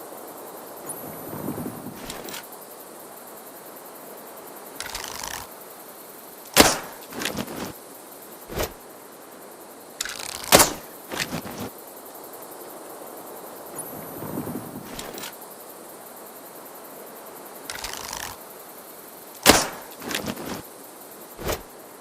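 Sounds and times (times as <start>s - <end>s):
rustling: 4.8s - 5.5s, 6.5s - 7.8s, 8.5s - 8.8s, 10.0s - 11.7s, 17.7s - 18.4s, 19.4s - 20.6s, 21.4s - 21.7s
bow shot crack: 6.5s - 7.7s, 10.0s - 11.7s, 19.4s - 20.6s, 21.4s - 21.7s.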